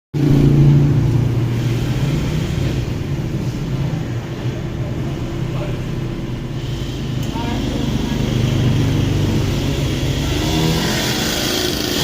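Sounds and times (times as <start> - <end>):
motorcycle exhaust rumble: 0.2 - 12.0.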